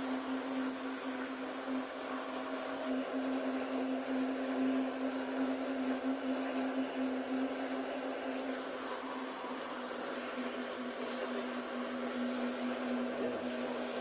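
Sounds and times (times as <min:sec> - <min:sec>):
machine-like hum: 0:00.0 - 0:14.0.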